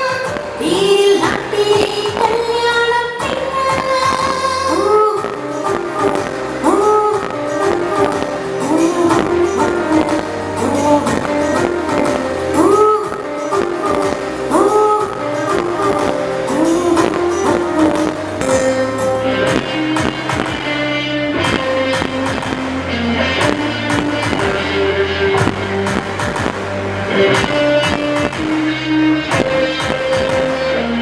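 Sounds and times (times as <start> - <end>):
loud recorded song with steady beat: 0.0 - 31.0.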